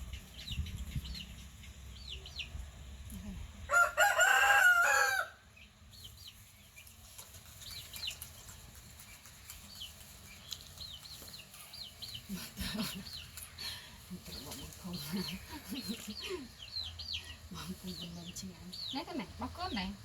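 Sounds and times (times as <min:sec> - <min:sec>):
rooster crowing: 0:03.7 - 0:05.4.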